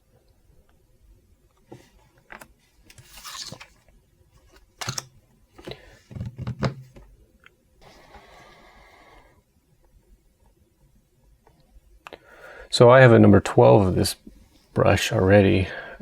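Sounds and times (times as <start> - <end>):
packaging rustling: 2.9 - 3.8.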